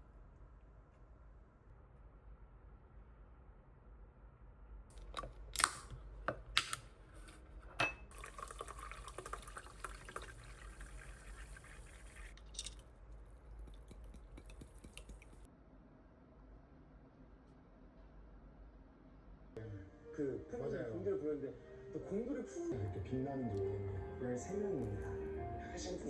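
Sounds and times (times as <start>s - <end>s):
glass or dishes clinking: 7.8s - 8.4s
water running: 8.0s - 15.5s.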